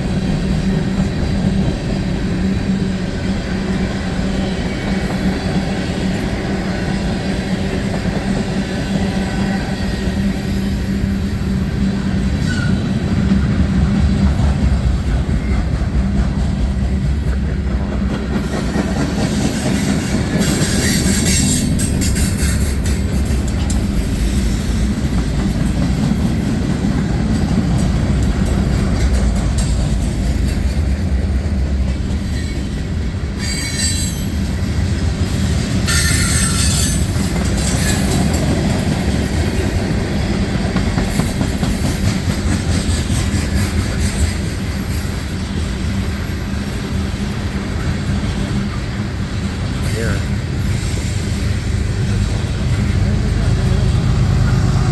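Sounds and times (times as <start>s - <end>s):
train wheels rumbling on rail: 0.0s - 54.9s
high-pitched wheel squeals: 9.3s - 13.0s, 33.4s - 34.3s, 35.9s - 37.1s.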